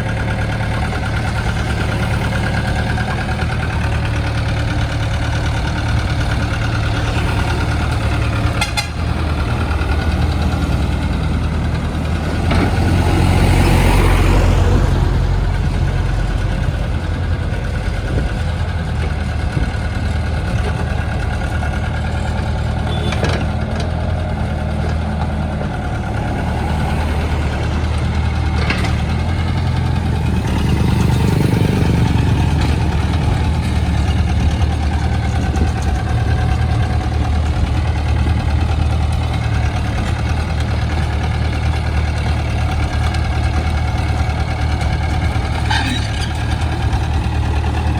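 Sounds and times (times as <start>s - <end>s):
truck engine idling: 0.0s - 47.9s.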